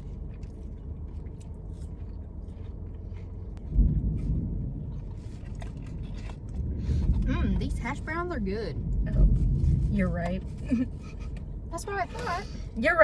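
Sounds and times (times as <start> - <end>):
chewing crunchy food: 0.0 - 7.7
steady low rumble: 0.0 - 13.0
low thump: 3.6 - 5.0.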